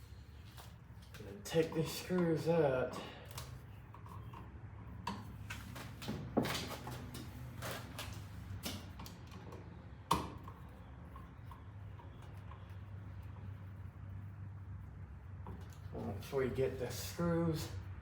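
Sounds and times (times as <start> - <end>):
low steady hum: 7.2 - 18.0.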